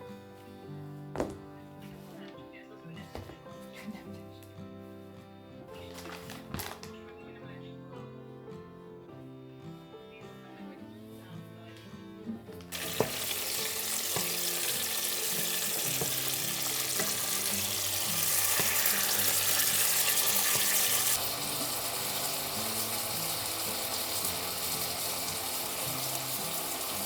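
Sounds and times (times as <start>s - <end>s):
food sizzling in a frying pan: 12.7s - 27.0s.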